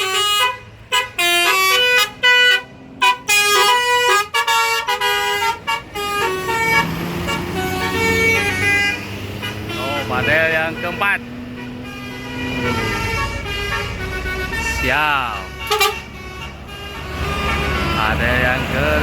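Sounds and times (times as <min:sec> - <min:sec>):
bus engine rumbling: 0:00.0 - 0:19.0
musical bus horn tune: 0:00.0 - 0:19.0.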